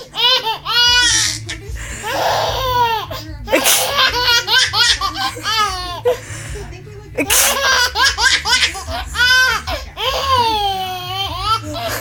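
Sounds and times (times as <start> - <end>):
baby laughing: 0.0 - 6.2, 7.2 - 12.0
adult fake sneeze: 3.5 - 4.0, 7.2 - 7.7.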